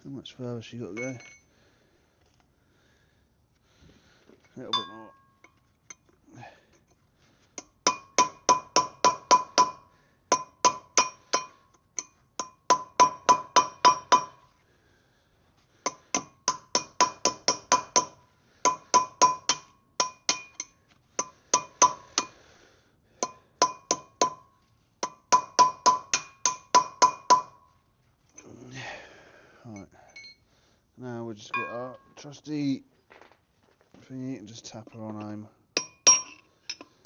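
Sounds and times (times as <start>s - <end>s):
hammer striking metal: 4.7s - 5.3s, 7.6s - 14.4s, 15.9s - 22.4s, 23.2s - 27.6s, 31.6s - 32.2s, 35.8s - 36.9s.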